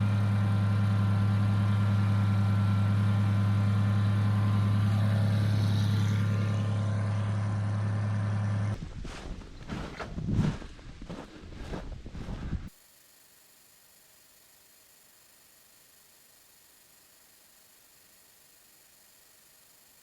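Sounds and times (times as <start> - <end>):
vehicle engine droning: 0.0 - 8.8.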